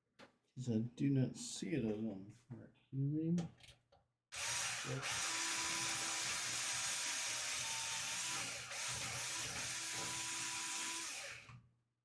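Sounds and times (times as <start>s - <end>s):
small electric motor whirring: 4.4s - 11.5s.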